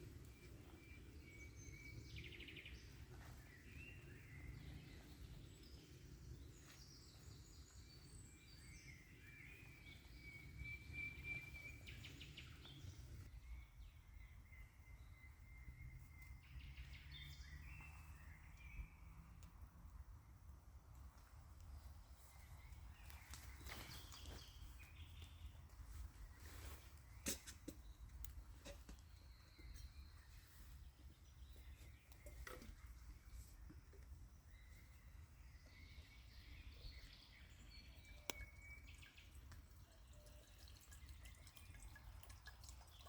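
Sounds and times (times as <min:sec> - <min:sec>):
birdsong whistles and trills: 0:06.6 - 0:19.0, 0:34.5 - 0:41.8.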